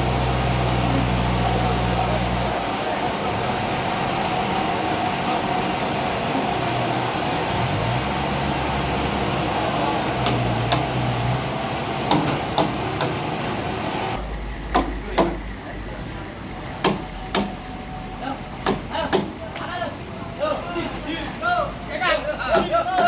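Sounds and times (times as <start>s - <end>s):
sharp knocks: 10.2s - 11.1s, 12.0s - 13.6s, 14.7s - 15.5s, 16.8s - 17.6s, 18.6s - 19.4s.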